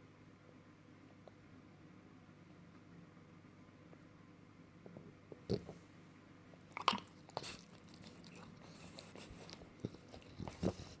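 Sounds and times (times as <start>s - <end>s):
dog mouth smacks and clicks: 6.7s - 10.8s.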